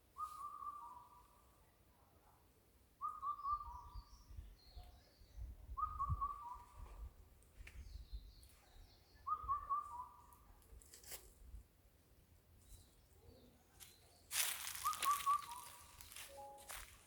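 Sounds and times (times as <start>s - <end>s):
faint high bird chirps: 0.1s - 1.6s, 3.0s - 7.1s, 7.8s - 10.5s, 12.6s - 17.0s
bird whistling low phrase: 5.8s - 6.8s, 9.3s - 10.2s, 14.6s - 16.2s.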